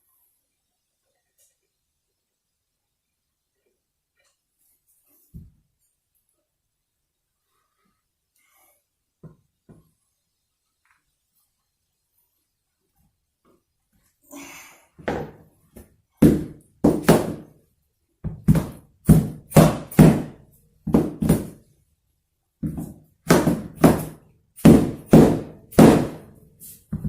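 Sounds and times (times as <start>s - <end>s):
heavy knocks on wooden floor: 16.2s - 17.5s, 18.2s - 21.5s, 22.6s - 26.2s.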